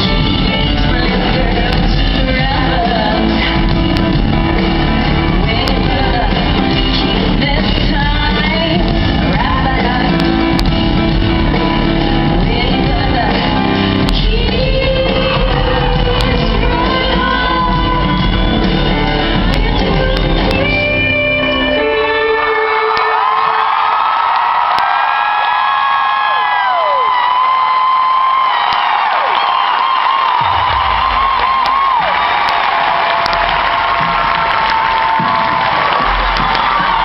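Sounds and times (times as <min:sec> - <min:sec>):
woman singing: 0:00.0 - 0:22.8
live rock band playing: 0:00.0 - 0:23.4, 0:30.4 - 0:37.0.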